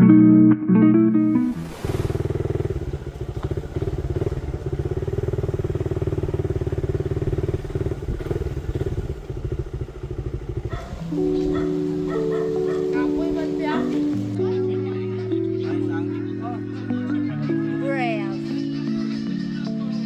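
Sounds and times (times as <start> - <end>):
music: 0.0 - 1.8, 10.8 - 20.0
small motorcycle engine running: 1.6 - 16.0.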